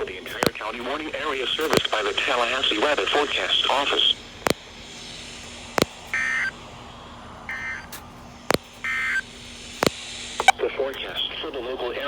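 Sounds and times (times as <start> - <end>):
sharp clicks: 1.6 - 2.0, 4.5 - 6.5, 7.5 - 11.1.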